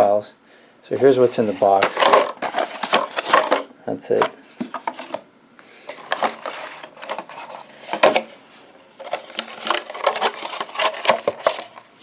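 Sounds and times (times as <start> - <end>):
packaging rustles and clicks: 1.3 - 5.2, 5.9 - 8.3, 9.0 - 12.0.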